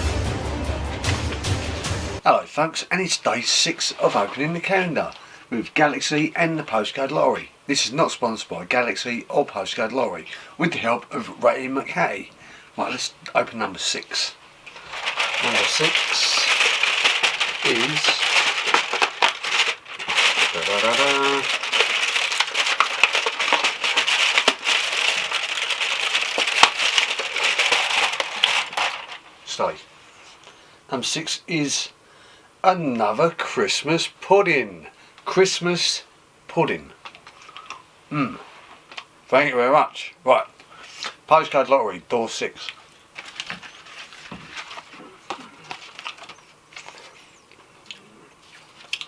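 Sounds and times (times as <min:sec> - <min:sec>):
cardboard packaging crinkling: 0:04.0 - 0:05.2, 0:13.4 - 0:29.5, 0:42.8 - 0:47.4.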